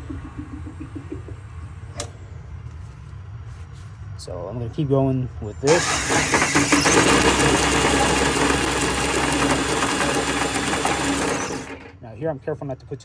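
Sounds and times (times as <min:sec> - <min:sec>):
power drill running: 0:05.6 - 0:12.0.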